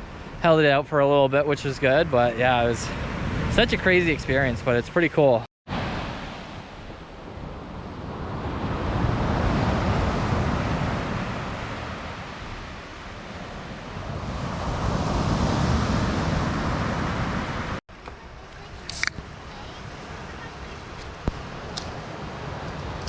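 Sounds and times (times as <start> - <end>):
ocean surf washing onto beach: 5.7 - 23.0.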